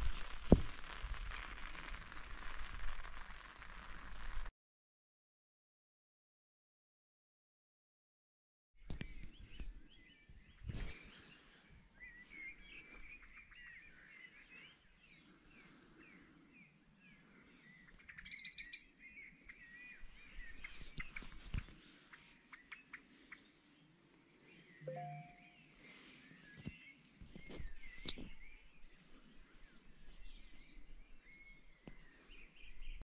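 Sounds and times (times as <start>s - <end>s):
songbirds chirping: 8.8s - 33.0s.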